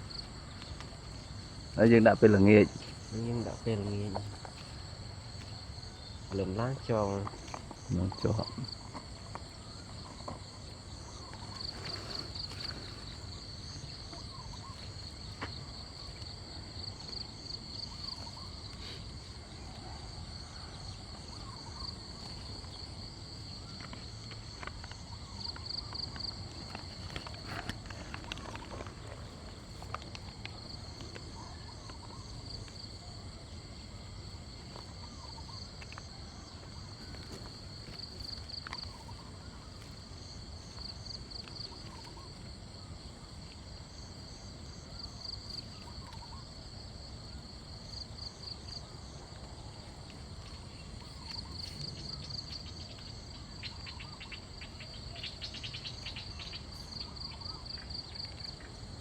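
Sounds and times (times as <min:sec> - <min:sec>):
insects trilling: 0:00.0 - 0:59.0.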